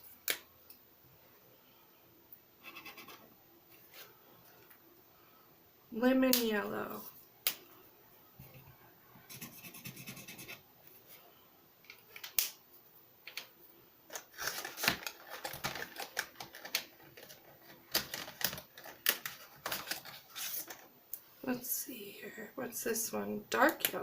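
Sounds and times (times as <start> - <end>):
marker tip scratching paper: 9.3 - 10.6.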